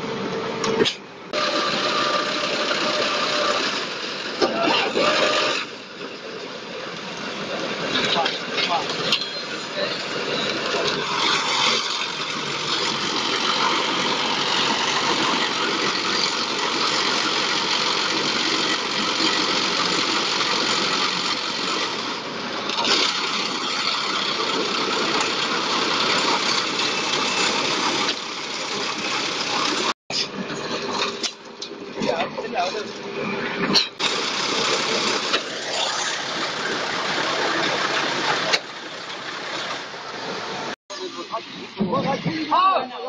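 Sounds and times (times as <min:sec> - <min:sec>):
concrete mixer pump running: 0:00.0 - 0:43.0.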